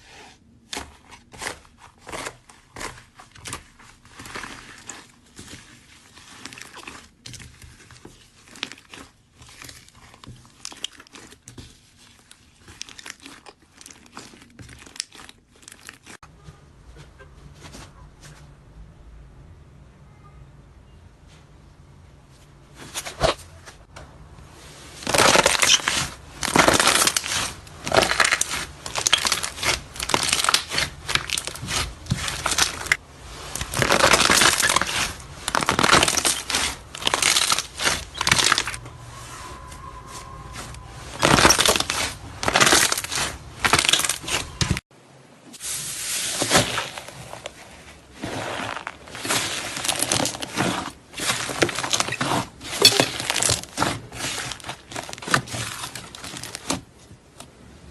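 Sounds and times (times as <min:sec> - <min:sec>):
slime crackling and popping: 0:02.1 - 0:16.2, 0:25.0 - 0:38.8, 0:41.0 - 0:44.8.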